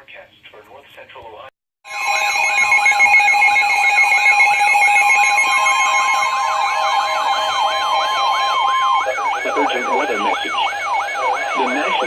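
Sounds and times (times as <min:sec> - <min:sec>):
emergency alert tones: 0:01.8 - 0:12.0
siren wails: 0:01.9 - 0:12.0.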